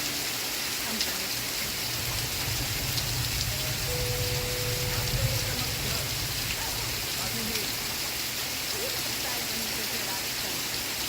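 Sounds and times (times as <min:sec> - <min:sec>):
steady rain hiss: 0:00.0 - 0:11.0
low rumble: 0:02.0 - 0:07.4
faint held tone: 0:03.8 - 0:06.0.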